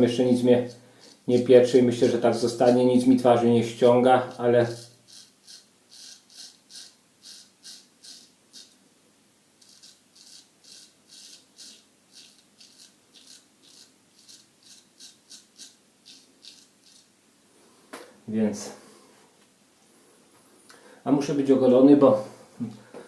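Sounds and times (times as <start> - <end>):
razor scraping through stubble: 0.3 - 3.2, 3.8 - 8.8, 9.6 - 17.1.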